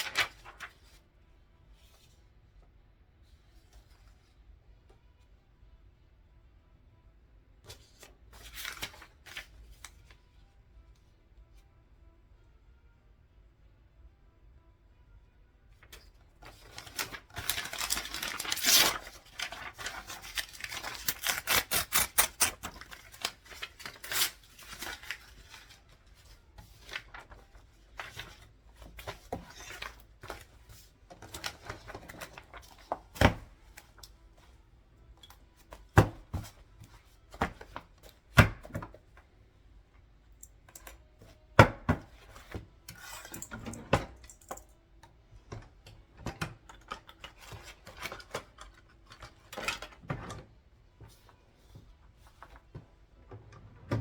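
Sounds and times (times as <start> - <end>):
paper rustling and tearing: 0.0 - 1.0, 8.4 - 9.5, 16.5 - 30.5.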